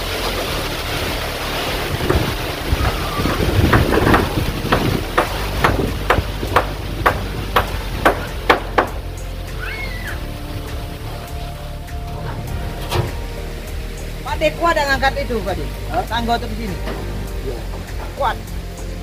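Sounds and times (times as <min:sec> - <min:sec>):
wind on microphone: 0:00.0 - 0:19.0
hammer knocking on metal sheet: 0:03.3 - 0:09.0.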